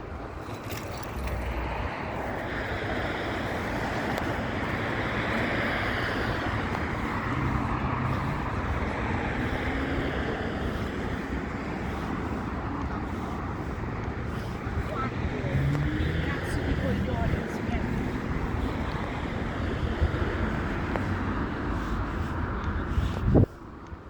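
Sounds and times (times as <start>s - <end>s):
steady traffic: 0.0s - 24.0s
vehicle passing: 0.2s - 23.8s.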